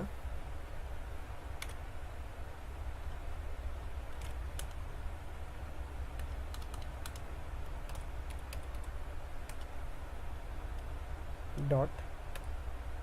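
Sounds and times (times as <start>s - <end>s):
steady low hum: 0.0s - 13.0s
computer keyboard keys clicking: 1.6s - 1.8s, 4.1s - 4.8s, 6.1s - 9.7s, 12.3s - 12.6s.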